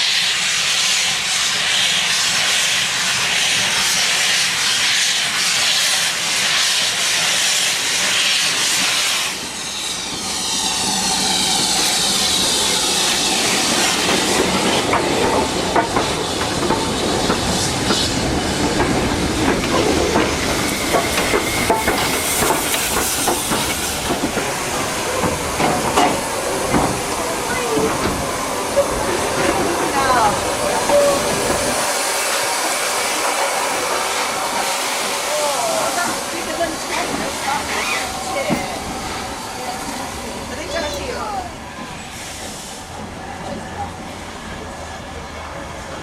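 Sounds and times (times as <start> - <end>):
steam hissing: 0.0 - 46.0
train wheels clicking over rails: 3.9 - 40.1.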